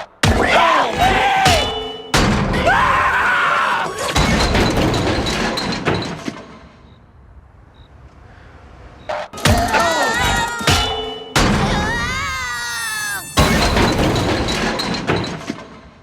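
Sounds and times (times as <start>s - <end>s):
crashing noise: 4.2s - 7.0s, 13.3s - 16.0s.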